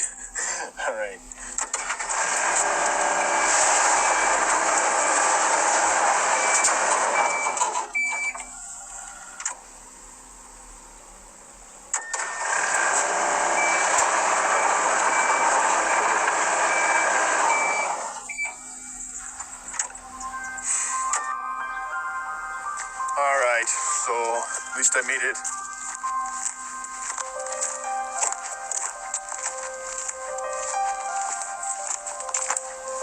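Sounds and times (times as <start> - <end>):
excavator engine running: 1.2 - 8.4, 11.8 - 33.0
travel alarm beeping: 3.0 - 5.2, 6.2 - 8.6, 12.0 - 31.6.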